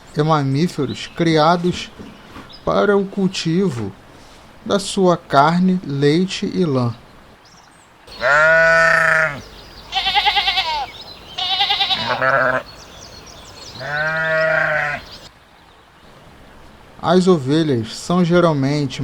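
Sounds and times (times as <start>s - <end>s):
sheep bleating: 8.1s - 12.8s, 13.8s - 15.2s.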